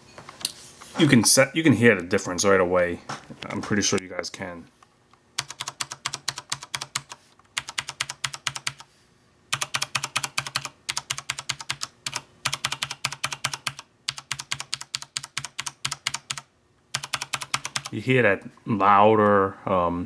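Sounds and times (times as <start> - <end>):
typing on mechanical keyboard: 5.4 - 8.9, 9.5 - 18.0.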